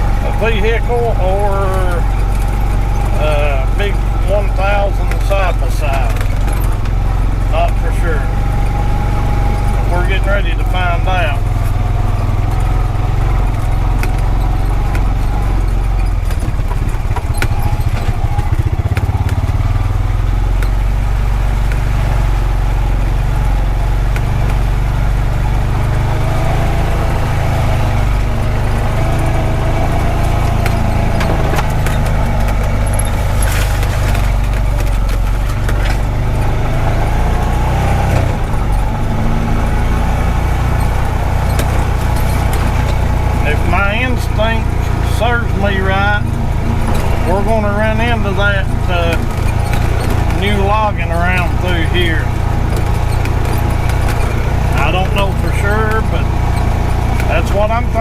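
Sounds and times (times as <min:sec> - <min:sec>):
utility vehicle engine running: 0:00.0 - 0:58.0
clicks and rattles: 0:28.0 - 0:58.0.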